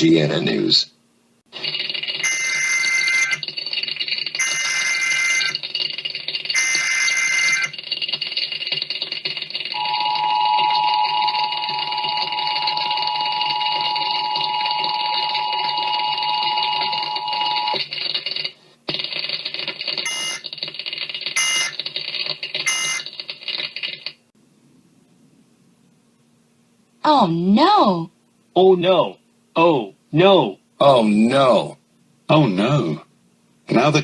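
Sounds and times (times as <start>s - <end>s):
two-tone electronic alarm: 1.6s - 8.6s, 9.7s - 17.8s, 20.0s - 20.5s, 21.3s - 21.8s, 22.6s - 23.1s.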